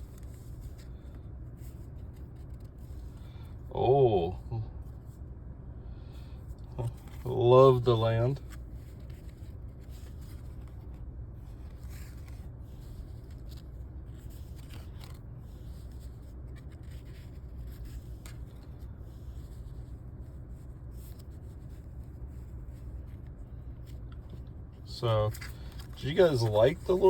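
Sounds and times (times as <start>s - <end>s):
trading cards sliding: 22.6s - 27.0s
car cabin hum: 25.9s - 27.0s.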